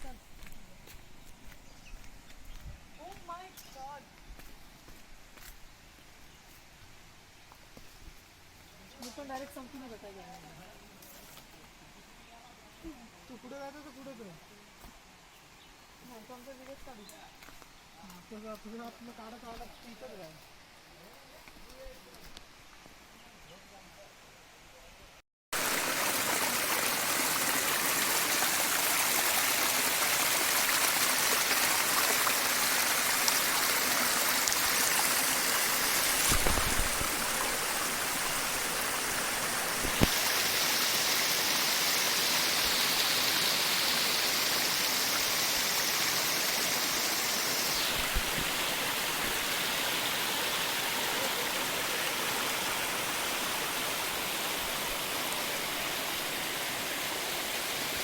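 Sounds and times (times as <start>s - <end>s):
waterfall rushing: 25.6s - 58.0s.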